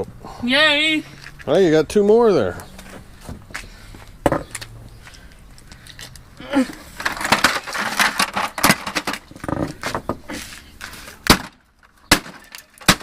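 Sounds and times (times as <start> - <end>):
plastic crunching and cracking: 11.2 - 13.0
sledgehammer blows on plastic: 11.2 - 13.0.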